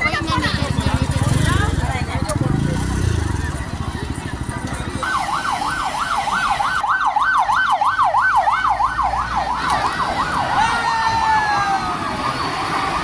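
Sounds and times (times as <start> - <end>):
siren yelping: 5.0 - 13.0.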